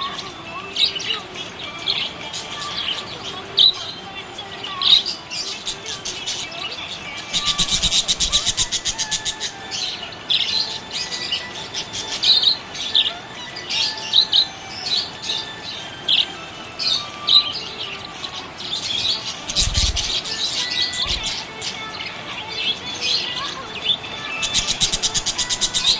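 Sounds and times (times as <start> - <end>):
budgerigar chirping: 4.8 - 21.8, 23.2 - 25.9.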